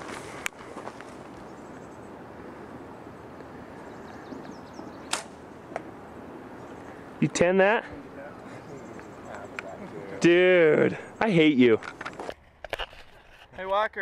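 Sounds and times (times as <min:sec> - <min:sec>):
arrow striking target: 0:05.1 - 0:05.4
bow release snap: 0:05.1 - 0:05.4.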